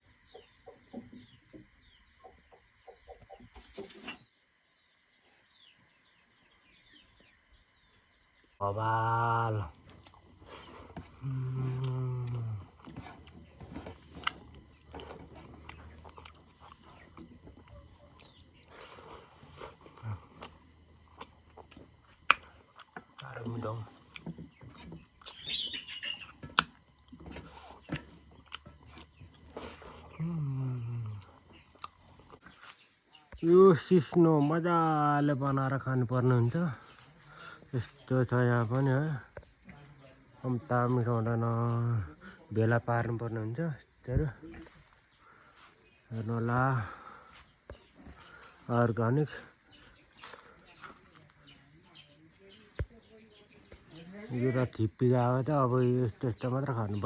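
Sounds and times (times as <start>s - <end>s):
chickens clucking: 0.0s - 4.3s, 9.5s - 33.6s, 44.4s - 57.0s
mouth clicks and smacks: 9.9s - 30.2s, 31.1s - 32.6s
high falling chirps: 24.6s - 32.8s.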